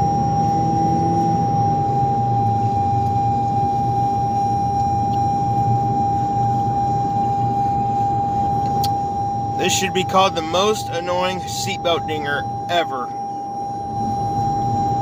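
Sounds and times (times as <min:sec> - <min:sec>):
car rumble: 0:00.0 - 0:15.0
seatbelt reminder chime: 0:08.4 - 0:14.0.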